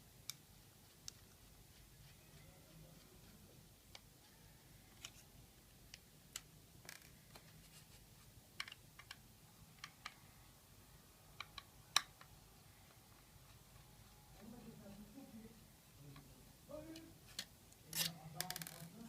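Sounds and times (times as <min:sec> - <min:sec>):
laptop parts clicking and tapping: 0:08.6 - 0:10.2, 0:11.4 - 0:12.3.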